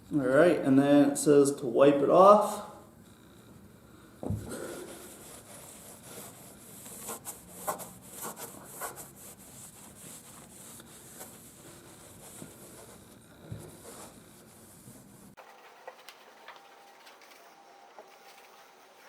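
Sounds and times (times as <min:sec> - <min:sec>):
cloth wiping painted metal: 0:04.6 - 0:17.0, 0:17.9 - 0:19.0.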